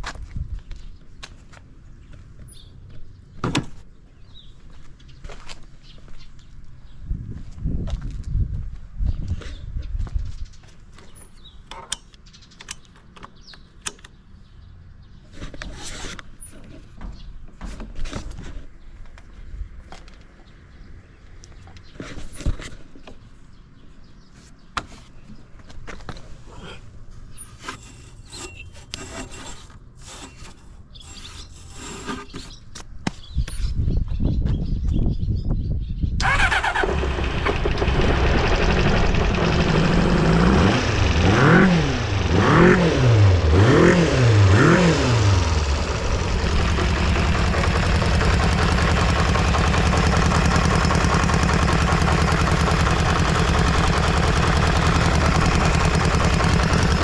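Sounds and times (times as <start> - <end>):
motorcycle engine starting and revving: 36.2 - 57.0.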